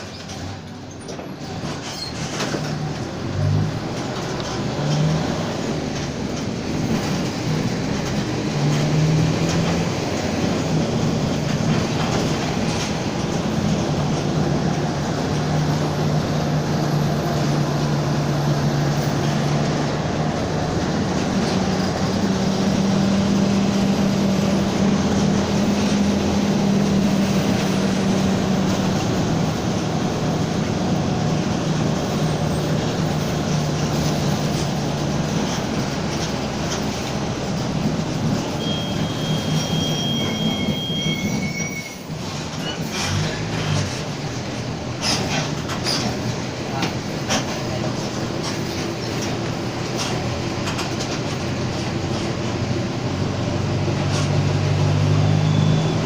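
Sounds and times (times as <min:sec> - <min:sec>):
bus engine running: 0:00.0 - 0:56.0
brief high whistle: 0:38.6 - 0:42.0, 0:55.3 - 0:56.0.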